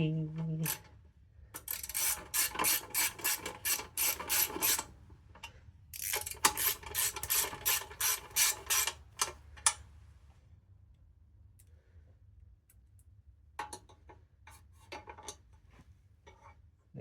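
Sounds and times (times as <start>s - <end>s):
ratchet wrench clicking: 1.6s - 4.9s, 6.0s - 9.8s.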